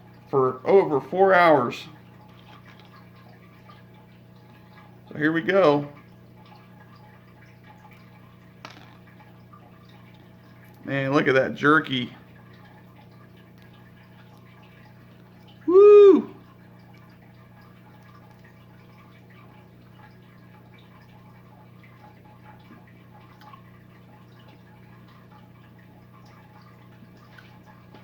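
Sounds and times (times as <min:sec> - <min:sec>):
man shouting woo: 0:15.6 - 0:16.4.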